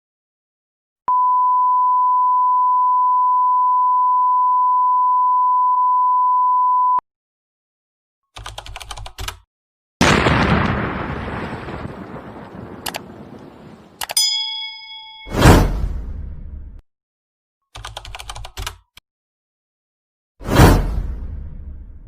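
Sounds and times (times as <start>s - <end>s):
steady electronic beep tone: 1.1s - 7.0s.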